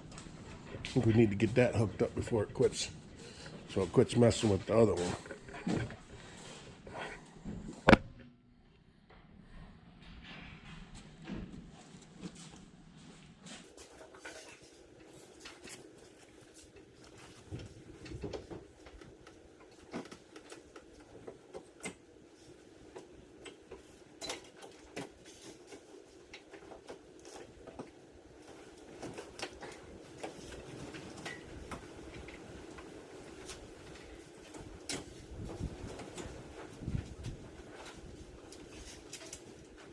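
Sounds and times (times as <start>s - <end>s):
hand tools clicking and knocking: 13.7s - 39.9s.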